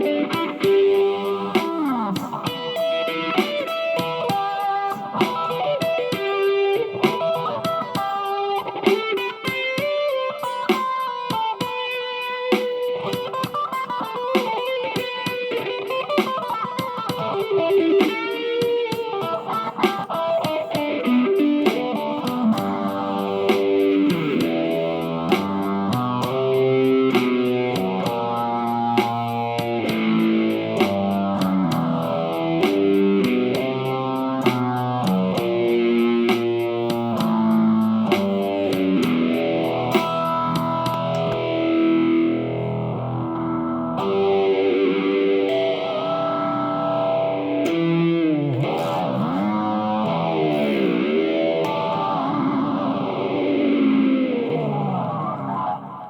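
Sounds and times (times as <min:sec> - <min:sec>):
quick ticking beat: 0:00.0 - 0:41.8
electric guitar through effects: 0:00.0 - 0:56.0.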